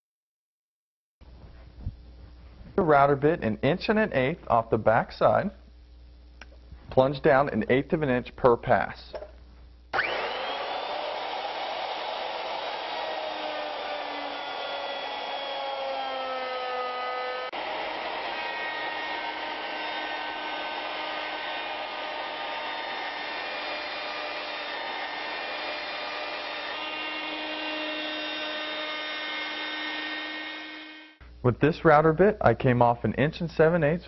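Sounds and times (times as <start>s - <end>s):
router routing wood: 10.0s - 31.2s.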